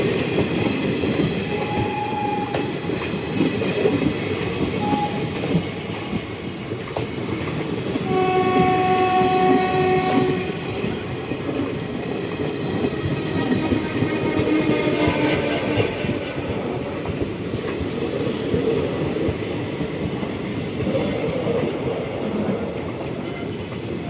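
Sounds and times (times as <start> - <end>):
train wheels rumbling on rails: 0.0 - 24.0
locomotive horn: 1.5 - 2.7, 8.0 - 10.7, 13.5 - 16.3.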